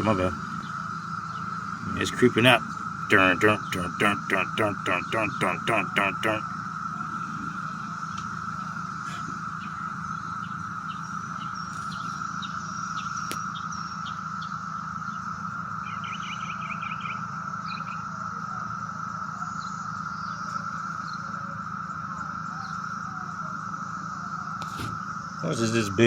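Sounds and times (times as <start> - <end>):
low steady hum: 0.0 - 16.5
birds chirping: 0.0 - 18.1, 19.3 - 26.0
cicadas droning: 0.0 - 26.0.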